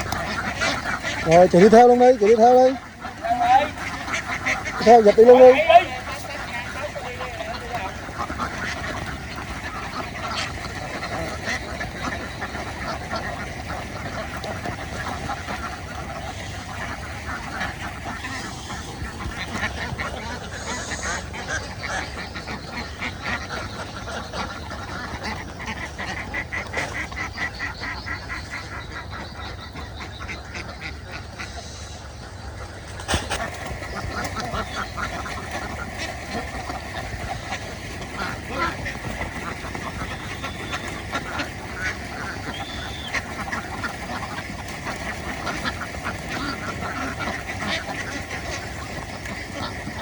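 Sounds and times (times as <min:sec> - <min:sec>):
flock of ducks quacking: 0:00.0 - 0:50.0.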